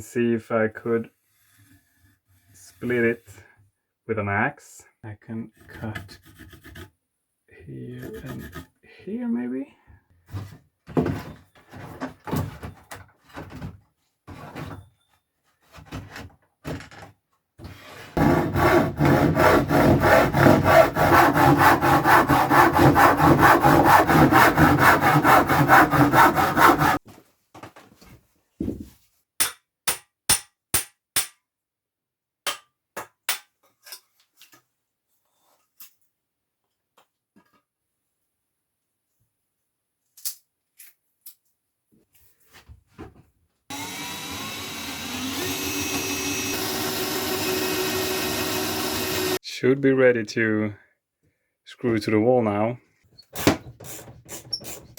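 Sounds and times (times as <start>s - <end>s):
saw cutting wooden board: 8.0s - 8.7s, 18.2s - 27.0s, 43.7s - 49.4s.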